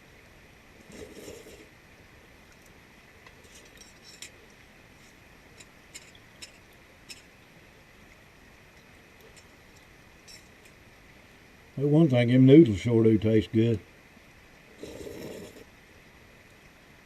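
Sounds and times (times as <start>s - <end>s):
metal utensil clinking on pot: 10.2s - 10.8s.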